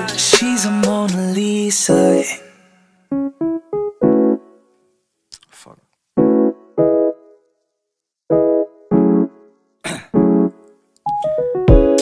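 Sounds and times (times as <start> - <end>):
background music: 0.0 - 4.6, 8.3 - 12.0.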